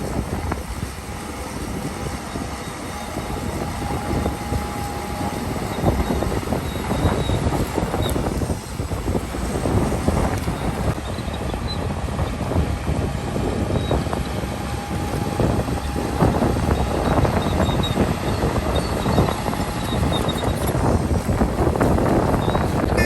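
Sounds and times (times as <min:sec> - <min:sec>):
bulldozer diesel engine rattling: 0:00.0 - 0:23.0.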